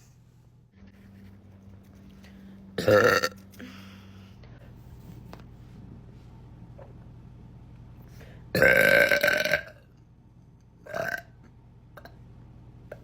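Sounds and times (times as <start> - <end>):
woman burping: 2.8 - 3.7, 8.6 - 9.8.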